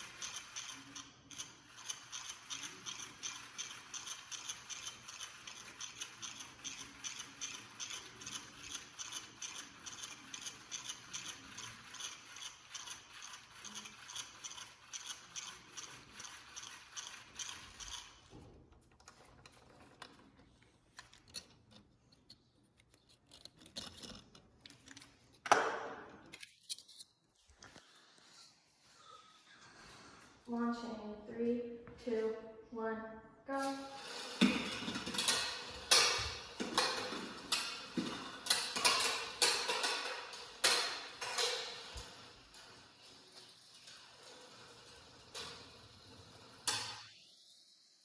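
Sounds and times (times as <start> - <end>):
hand winder gears clicking: 0.0 - 18.3.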